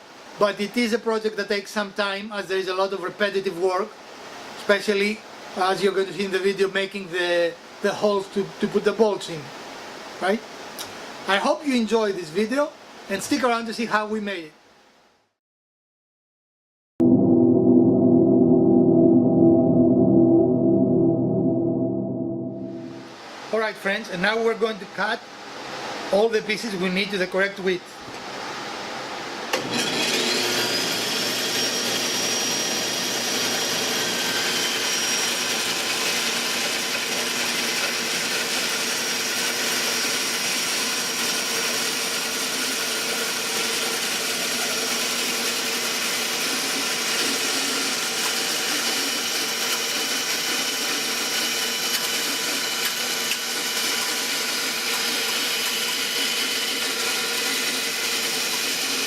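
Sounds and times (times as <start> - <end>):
electric saw cutting wood: 29.6 - 59.0.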